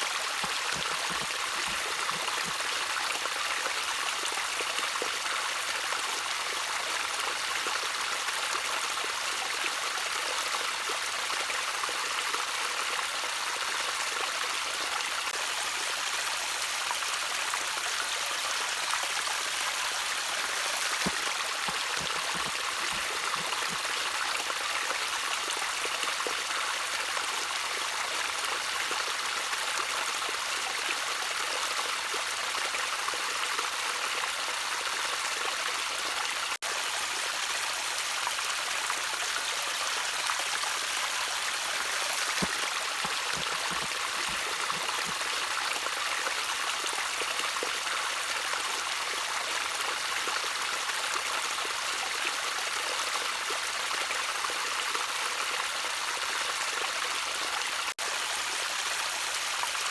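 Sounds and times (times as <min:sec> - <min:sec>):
water trickling: 0:00.0 - 0:04.7, 0:18.9 - 0:25.4, 0:41.3 - 0:46.6
water gurgling: 0:00.0 - 0:05.3, 0:17.5 - 0:27.2, 0:39.4 - 0:47.8.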